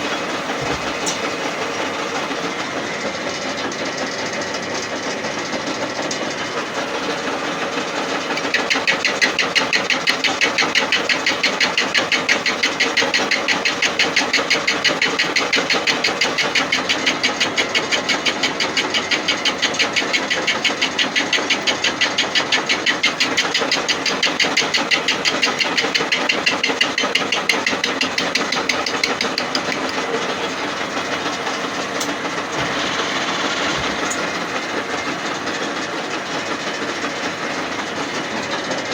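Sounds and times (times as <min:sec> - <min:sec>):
lathe running: 0:00.0 - 0:38.9
cutter knocking on iron: 0:00.5 - 0:01.3, 0:08.3 - 0:30.3.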